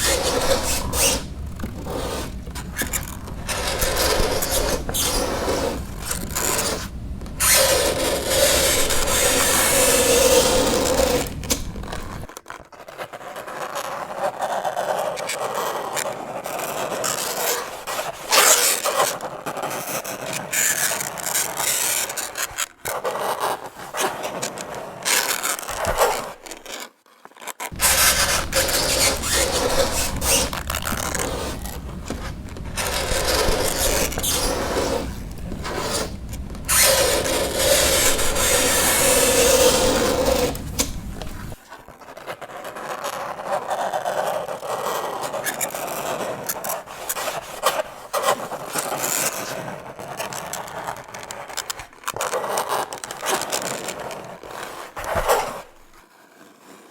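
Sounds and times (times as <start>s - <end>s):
drawn-out squeal: 0.0s - 12.2s, 27.8s - 41.6s
fingernails scraping chalkboard: 0.0s - 12.3s, 27.7s - 41.6s.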